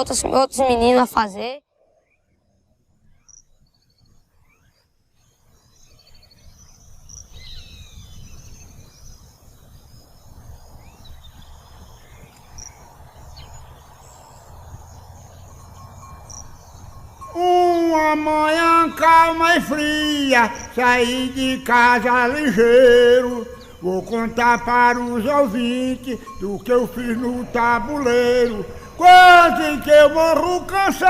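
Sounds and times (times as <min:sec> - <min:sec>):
small birds chirping: 0:00.1 - 0:31.0
insects: 0:01.7 - 0:31.0.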